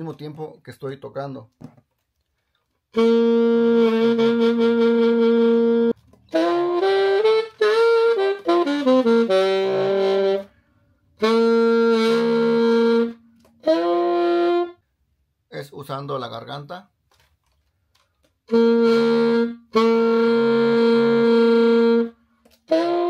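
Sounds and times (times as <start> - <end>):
saxophone played with a growl: 2.9 - 14.8, 18.5 - 23.0.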